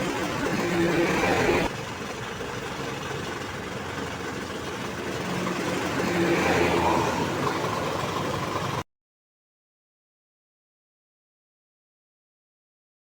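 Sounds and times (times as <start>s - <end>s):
bus engine running: 0.0s - 8.8s
road noise: 0.0s - 8.8s.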